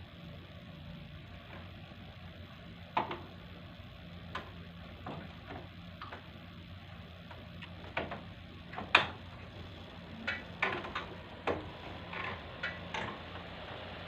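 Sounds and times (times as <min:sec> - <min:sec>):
steady low hum: 0:00.0 - 0:14.0
sharp clicks and knocks: 0:02.9 - 0:03.3, 0:07.2 - 0:09.6, 0:10.2 - 0:13.4.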